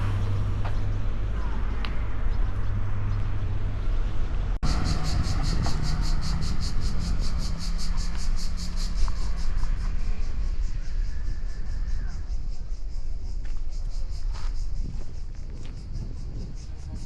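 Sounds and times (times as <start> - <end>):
cicadas buzzing in pulses: 4.6 - 17.0.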